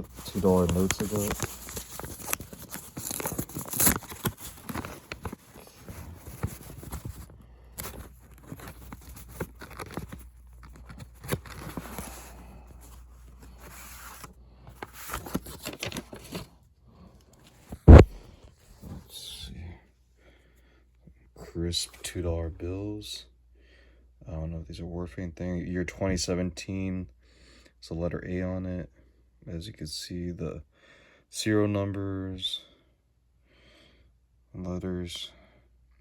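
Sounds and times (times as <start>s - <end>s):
paper rustling and tearing: 0.0s - 16.5s, 17.4s - 18.2s.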